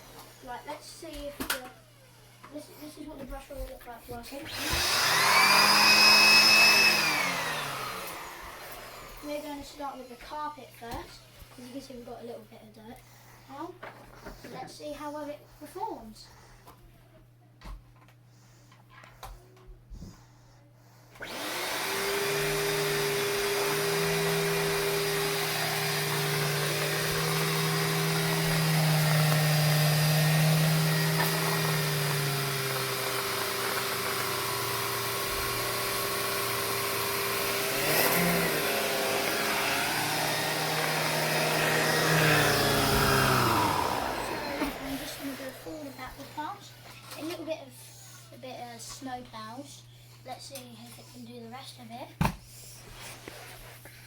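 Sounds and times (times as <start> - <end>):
vacuum cleaner running on carpet: 0.0 - 10.4, 21.2 - 46.6.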